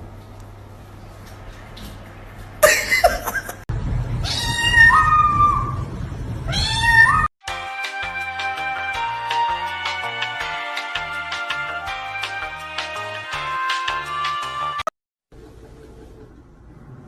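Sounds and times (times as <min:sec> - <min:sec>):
cat yowling meows: 0:04.2 - 0:05.9, 0:06.5 - 0:07.3.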